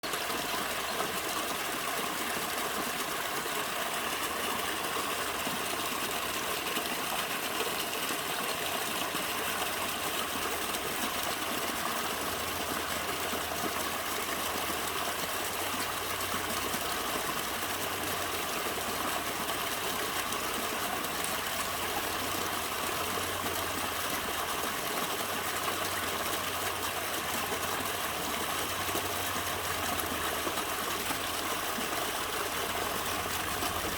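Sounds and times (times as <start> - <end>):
stream running: 0.0 - 33.9.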